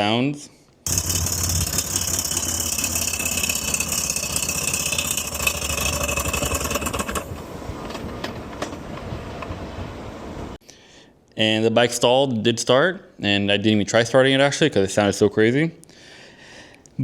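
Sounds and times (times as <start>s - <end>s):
motorcycle engine mechanical clatter: 0.9s - 8.8s.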